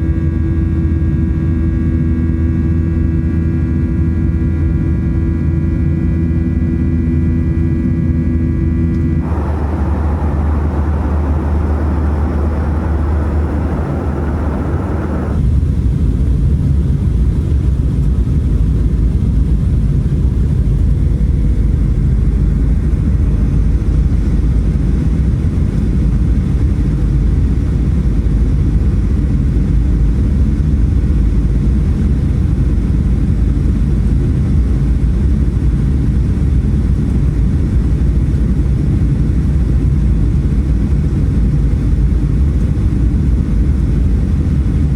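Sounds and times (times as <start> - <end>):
deep rumble of plane landing: 0.0 - 44.9
airliner cabin noise: 9.0 - 16.0.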